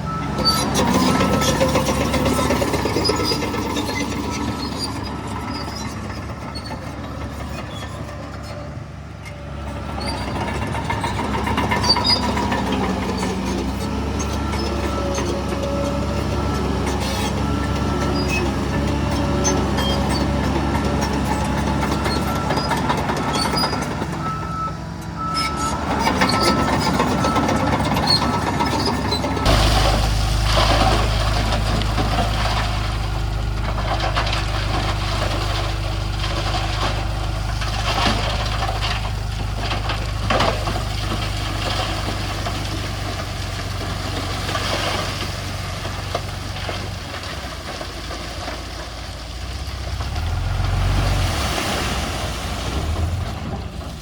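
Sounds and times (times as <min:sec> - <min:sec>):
reversing alarm beeping: 0:00.0 - 0:04.5, 0:21.4 - 0:30.0
diesel machinery running: 0:00.0 - 0:54.0.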